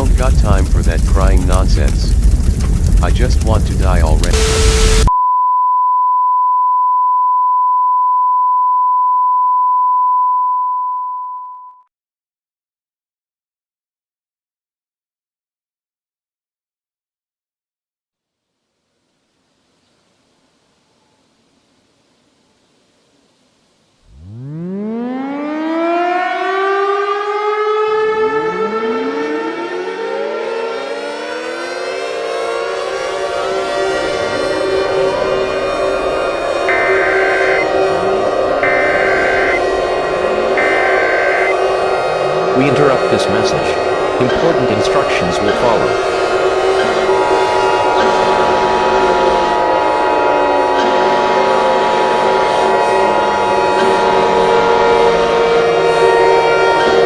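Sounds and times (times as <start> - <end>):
pure steady test tone: 3.1 - 11.8, 33.9 - 57.0
second siren winding up: 24.1 - 32.0, 36.5 - 42.6
civil defense siren winding up: 24.1 - 57.0.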